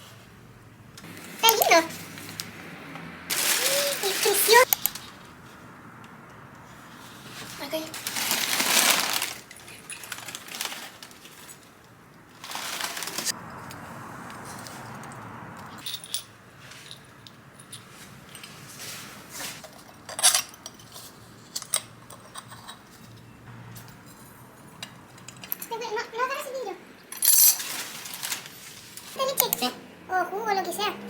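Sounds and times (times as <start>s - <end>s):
packaging rustling: 3.3s - 5.2s, 7.3s - 13.4s, 27.6s - 29.0s.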